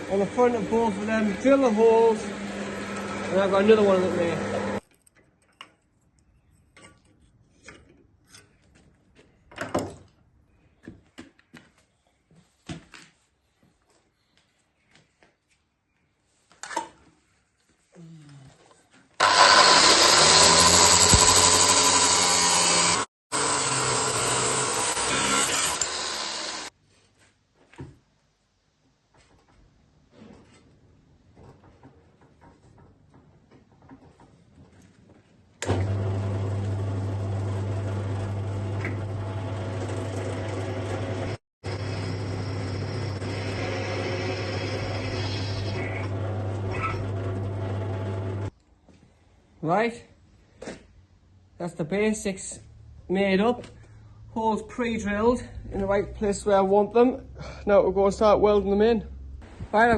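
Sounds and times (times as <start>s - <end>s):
power tool cutting steel: 0.0s - 4.8s, 19.2s - 26.7s, 35.6s - 48.5s.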